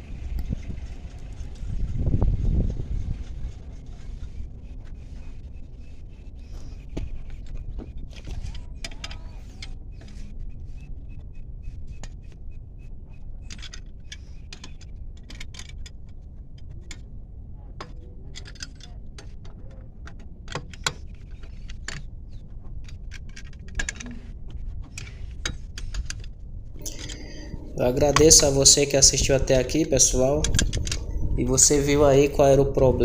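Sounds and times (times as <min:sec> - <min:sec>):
low background rumble: 0:21.1 - 0:33.0.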